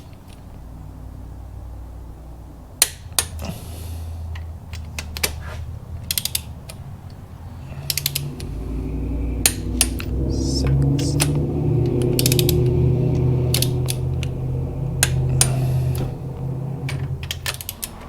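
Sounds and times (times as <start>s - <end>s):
low hum: 7.5s - 17.6s.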